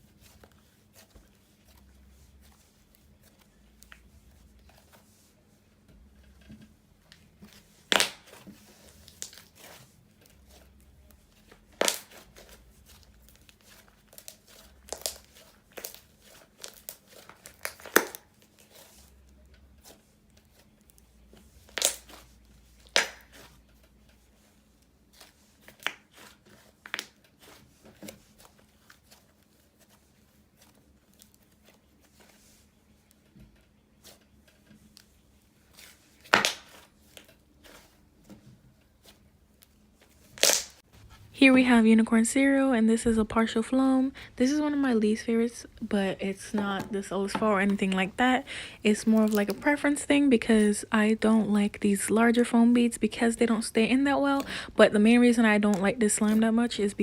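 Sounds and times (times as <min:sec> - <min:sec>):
slime popping and crinkling: 0:07.4 - 0:10.8, 0:11.5 - 0:18.9, 0:21.6 - 0:23.6, 0:35.7 - 0:37.3, 0:40.2 - 0:40.8, 0:46.2 - 0:50.1, 0:55.5 - 0:57.0.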